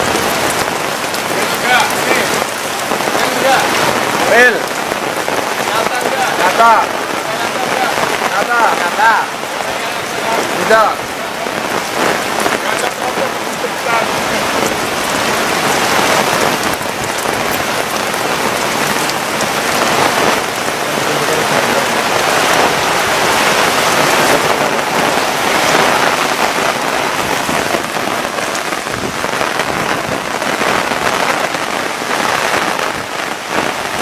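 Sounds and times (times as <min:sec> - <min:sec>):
heavy rain pouring: 0:00.0 - 0:34.0.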